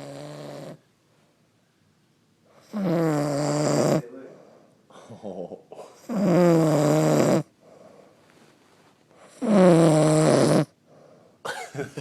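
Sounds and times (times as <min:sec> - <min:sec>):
woman snoring loudly: 0:00.0 - 0:00.8, 0:02.6 - 0:04.0, 0:06.0 - 0:07.5, 0:09.3 - 0:10.8.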